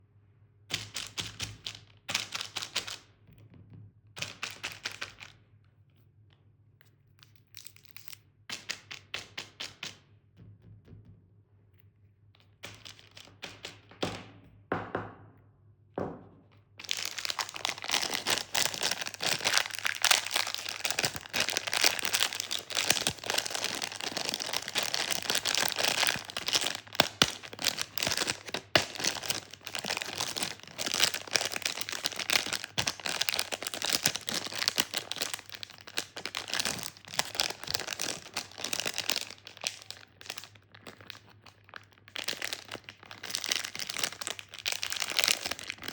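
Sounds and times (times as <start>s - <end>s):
plastic candy wrapper crinkling: 4.2s - 5.4s, 6.8s - 9.8s, 12.6s - 13.9s, 16.8s - 45.9s.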